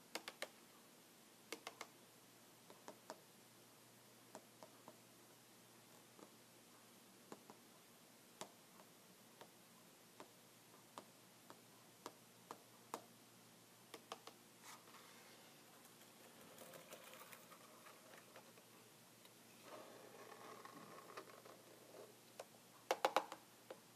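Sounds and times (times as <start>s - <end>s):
computer keyboard tapping: 0.1s - 0.5s, 1.5s - 1.9s.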